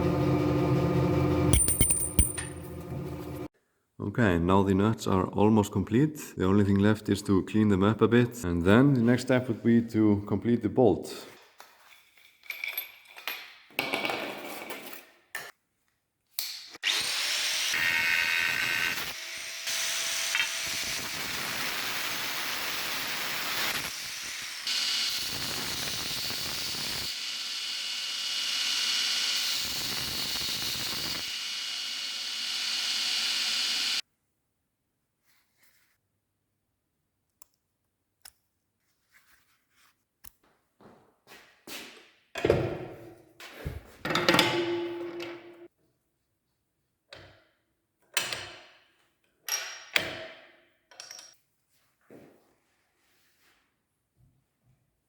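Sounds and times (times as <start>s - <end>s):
power tool running: 16.8s - 34.0s.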